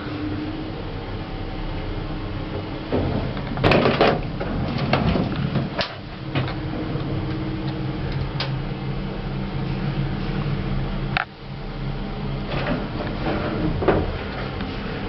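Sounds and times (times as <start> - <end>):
lift humming: 0.0 - 15.0
lift clatter: 2.5 - 8.8, 12.4 - 15.0.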